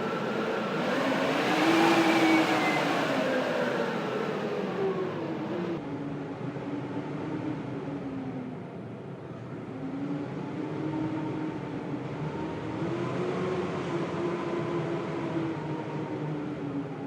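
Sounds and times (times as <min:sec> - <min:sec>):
blizzard wind howling: 0:00.0 - 0:17.0.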